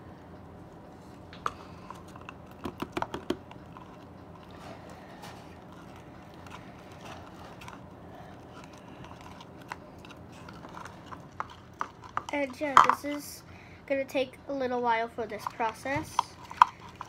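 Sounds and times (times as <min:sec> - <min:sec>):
utensil clicking against plastic cup: 0:02.2 - 0:03.9.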